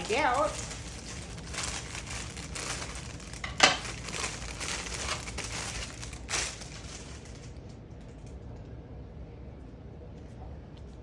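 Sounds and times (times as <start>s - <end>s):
packaging ripping: 0.0s - 7.6s
packaging crinkling: 0.0s - 8.4s.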